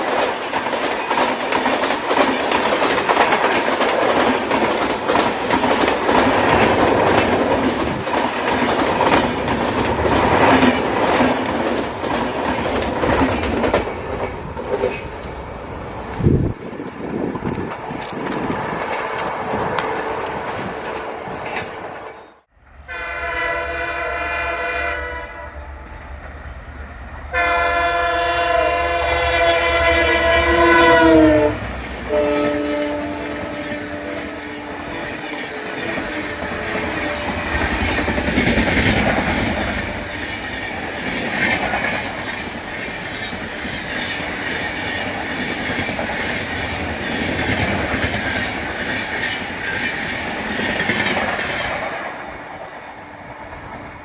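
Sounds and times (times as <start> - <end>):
train wheels clattering over rail joints: 0.0 - 15.2, 30.6 - 52.8
locomotive horn blasts: 22.8 - 25.8, 27.3 - 38.1.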